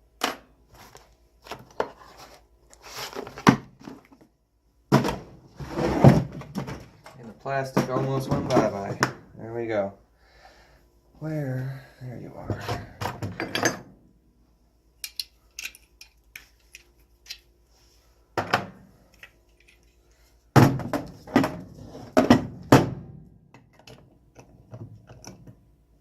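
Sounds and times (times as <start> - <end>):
small metal tools clicking: 15.0 - 17.4.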